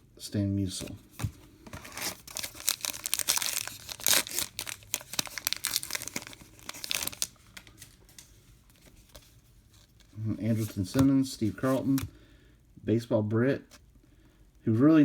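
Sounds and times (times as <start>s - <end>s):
wrapper tearing and crinkling: 1.7s - 10.0s.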